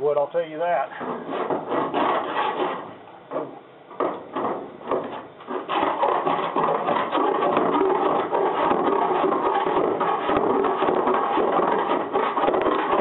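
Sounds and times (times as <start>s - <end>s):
hand file rasping on metal: 1.0s - 2.9s, 5.4s - 13.0s.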